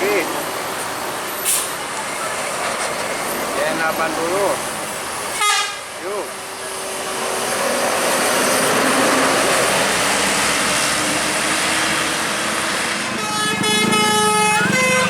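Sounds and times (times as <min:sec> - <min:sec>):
bus passing close by: 0:00.0 - 0:15.0
multi-tone air horn: 0:05.4 - 0:05.8, 0:13.2 - 0:15.0.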